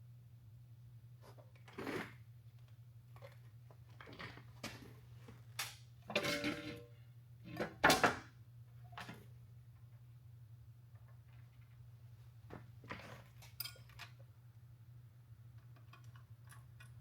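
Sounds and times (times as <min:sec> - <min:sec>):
metal tools clicking and knocking: 0:13.4 - 0:14.2.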